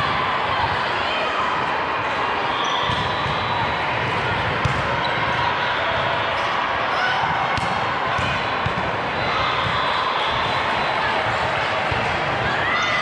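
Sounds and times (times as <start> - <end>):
volleyballs struck and bouncing: 2.9 - 5.4, 7.1 - 12.6.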